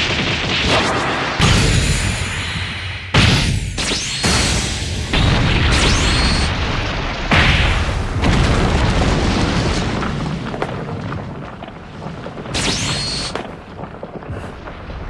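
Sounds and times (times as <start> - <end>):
explosion booms with rumble: 0.0 - 15.0.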